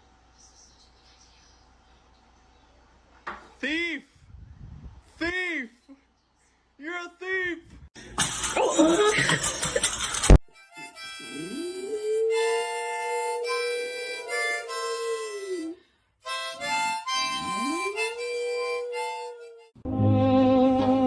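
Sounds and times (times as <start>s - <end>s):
music: 10.5s - 11.2s, 19.6s - 21.0s
harmonica chords: 10.5s - 21.0s
dog howling: 11.2s - 15.8s, 16.7s - 19.8s.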